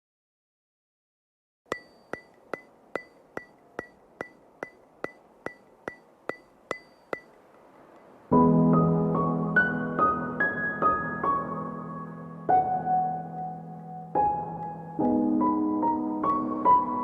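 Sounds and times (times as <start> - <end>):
sharp ringing ticks: 1.7 - 8.1
background music: 8.4 - 17.0.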